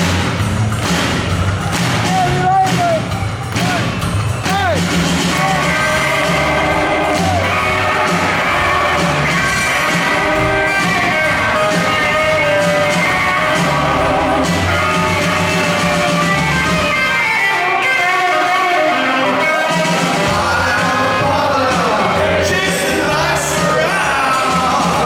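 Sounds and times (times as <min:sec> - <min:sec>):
upright bass: 0:00.0 - 0:16.9, 0:20.2 - 0:25.0
drums: 0:00.0 - 0:25.0
lead electric guitar: 0:05.3 - 0:22.3.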